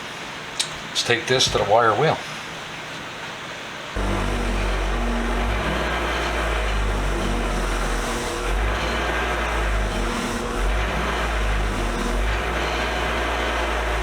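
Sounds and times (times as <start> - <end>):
wire wheel brushing metal: 4.0 - 14.0.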